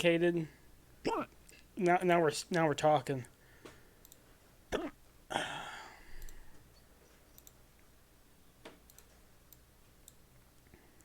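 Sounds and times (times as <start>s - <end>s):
faint scattered clicks: 3.6s - 4.2s, 6.2s - 7.9s, 8.6s - 11.0s.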